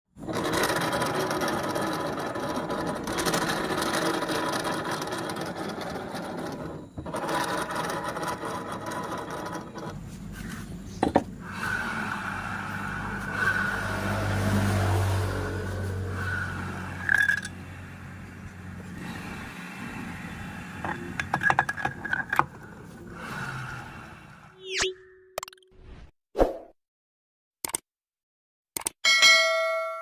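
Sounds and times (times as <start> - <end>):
scooter wheel grinding growl: 0.2 - 24.6
sharp click: 27.6 - 27.8, 28.8 - 29.0.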